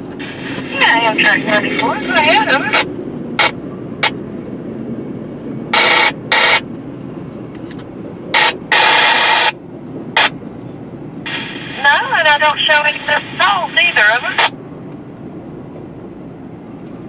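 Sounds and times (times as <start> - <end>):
locomotive rumble: 0.0 - 17.0
two-way radio bursts: 0.2 - 3.6, 5.8 - 6.6, 8.4 - 9.6, 11.3 - 14.5.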